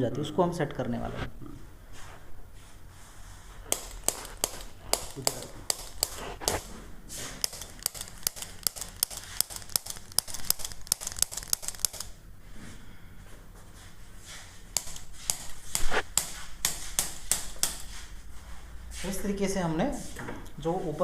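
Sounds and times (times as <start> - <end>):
crinkling clicks of neck: 7.4 - 12.1.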